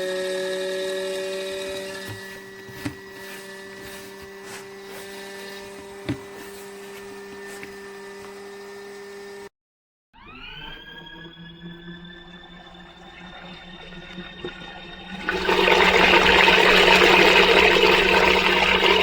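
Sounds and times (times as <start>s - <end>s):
motor spinning up: 0.0s - 9.5s, 10.2s - 19.0s
small electric motor humming: 0.0s - 9.5s.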